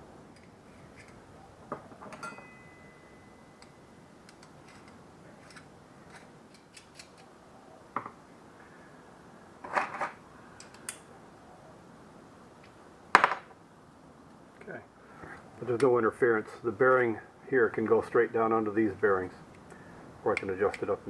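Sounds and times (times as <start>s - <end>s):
tools clattering: 1.0s - 2.9s.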